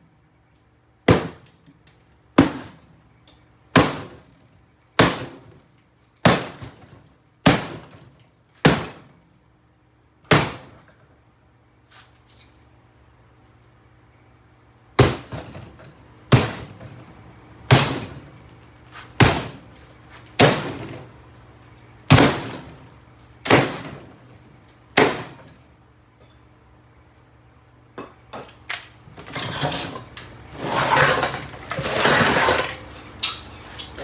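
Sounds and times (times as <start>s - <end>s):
hard blows on fridge cabinet: 15.0s - 18.4s, 19.0s - 19.7s, 20.4s - 21.1s, 22.1s - 22.8s
scraping and rattling: 29.2s - 34.0s.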